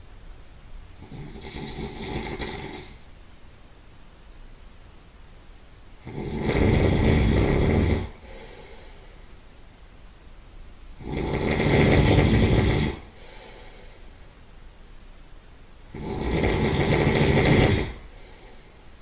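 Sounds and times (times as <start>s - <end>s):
quiet breathing: 0.8s - 3.3s, 6.0s - 9.7s, 10.9s - 14.8s, 15.7s - 19.0s
loud nasal snoring: 1.0s - 3.1s, 6.0s - 8.9s, 11.0s - 13.9s, 15.9s - 18.6s.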